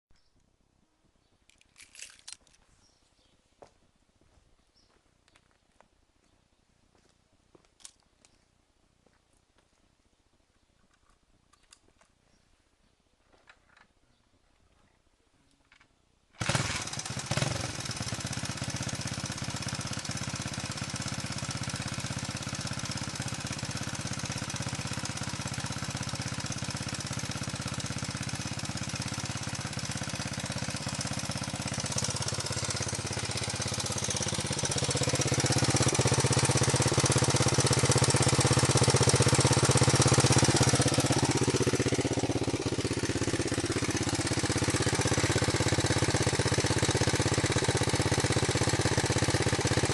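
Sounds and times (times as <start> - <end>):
motorcycle engine starting and idling: 15.7 - 49.9.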